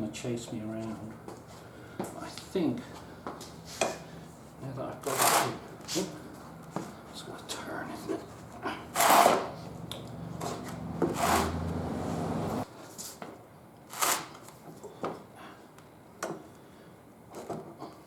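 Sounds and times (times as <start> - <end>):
tire lever scraping wheel rim: 5.1 - 5.6, 8.9 - 9.6, 10.4 - 11.8, 13.9 - 14.5
wheel shifting on stand: 10.4 - 12.6.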